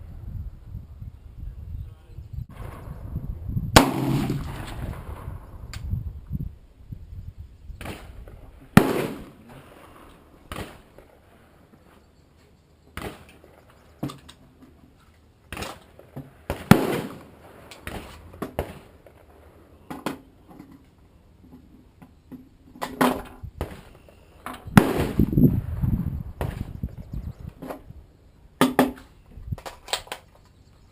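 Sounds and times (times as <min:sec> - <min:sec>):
rifle shots: 0:03.8 - 0:05.3, 0:07.8 - 0:09.4, 0:10.5 - 0:11.1, 0:16.5 - 0:19.0, 0:24.7 - 0:25.4
rifle action clacks: 0:29.6 - 0:30.5.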